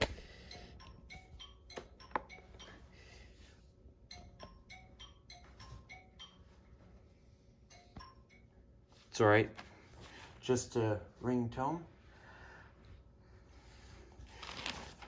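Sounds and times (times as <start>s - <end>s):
phone ringtone chime tune: 0.3s - 8.8s.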